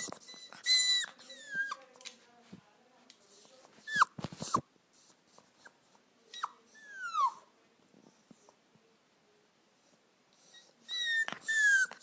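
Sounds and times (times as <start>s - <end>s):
dog whining: 0.0s - 1.8s, 10.4s - 12.0s.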